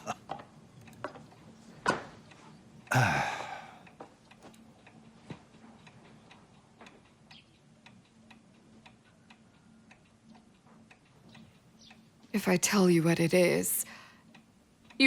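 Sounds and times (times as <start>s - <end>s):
wall clock ticking: 0.3s - 15.0s
person sighing heavily: 2.9s - 3.8s.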